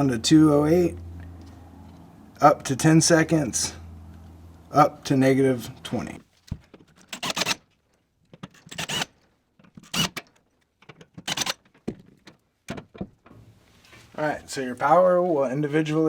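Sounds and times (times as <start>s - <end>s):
small hardware clicks and rattles: 6.6s - 13.0s.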